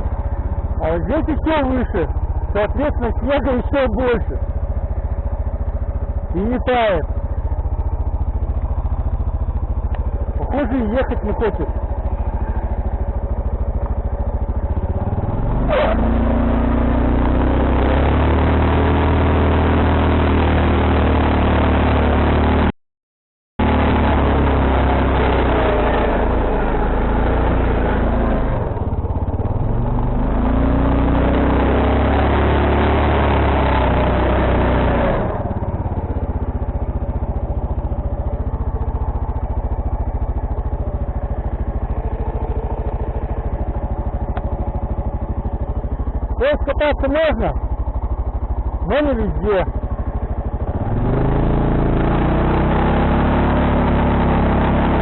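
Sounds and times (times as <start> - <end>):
quad bike engine revving: 0.0 - 22.7, 23.6 - 55.0.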